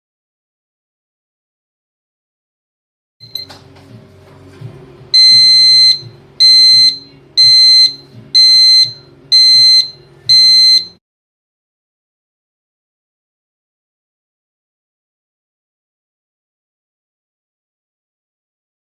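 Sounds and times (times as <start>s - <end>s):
electronic alarm buzzer beeps: 5.2s - 11.0s.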